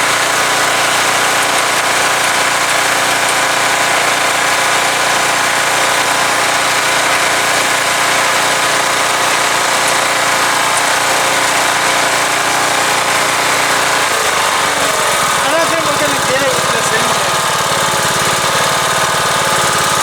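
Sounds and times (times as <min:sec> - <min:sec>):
lawnmower engine running: 0:00.0 - 0:20.0.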